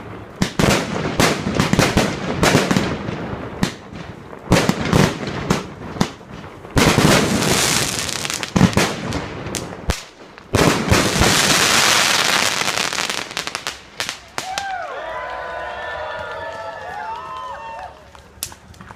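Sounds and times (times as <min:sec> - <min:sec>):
fireworks crackling: 0:00.0 - 0:15.3, 0:16.2 - 0:18.9.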